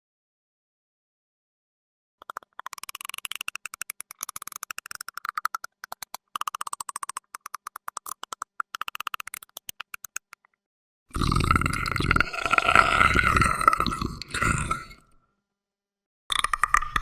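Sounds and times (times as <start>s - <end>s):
creature clicking call: 2.2s - 10.6s, 16.3s - 17.0s.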